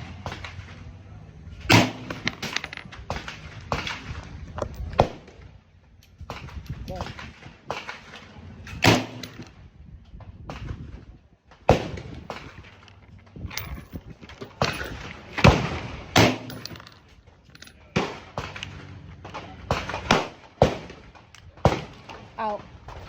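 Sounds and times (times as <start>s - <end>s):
gunshots: 1.7s - 4.2s, 6.3s - 9.4s, 11.7s - 12.6s, 14.5s - 16.8s, 17.9s - 22.3s.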